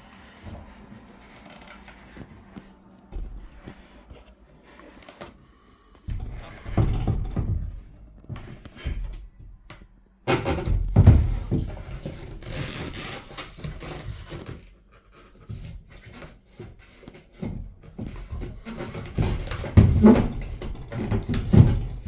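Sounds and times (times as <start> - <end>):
knocks of hard parts: 6.1 - 9.2, 10.3 - 12.4, 17.4 - 22.0.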